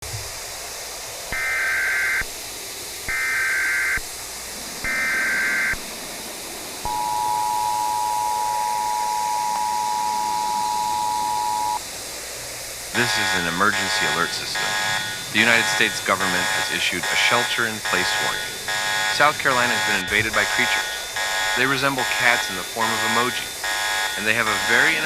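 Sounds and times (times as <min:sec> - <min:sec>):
steady hiss: 0:00.0 - 0:25.0
data tone bursts: 0:04.9 - 0:05.8, 0:06.8 - 0:11.8, 0:13.0 - 0:25.0
two-tone attention signal: 0:06.9 - 0:11.8, 0:13.0 - 0:25.0.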